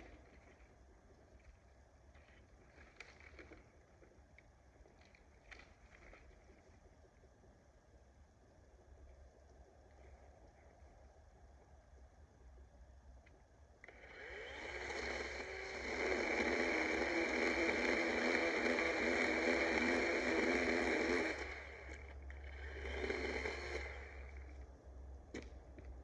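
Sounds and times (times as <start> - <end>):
battery chainsaw whining: 13.9 - 24.5.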